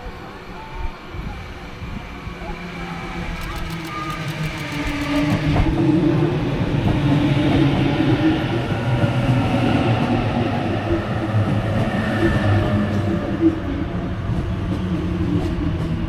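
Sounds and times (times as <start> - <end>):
train wheels rumbling on track: 2.3 - 16.0.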